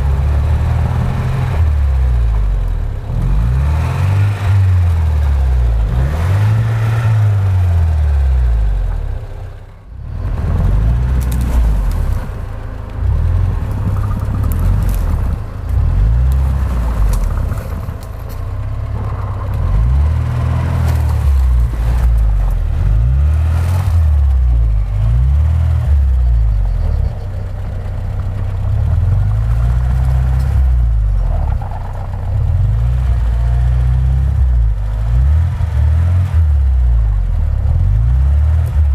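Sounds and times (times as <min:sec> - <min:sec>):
engine revving up and down: 0:00.0 - 0:38.9.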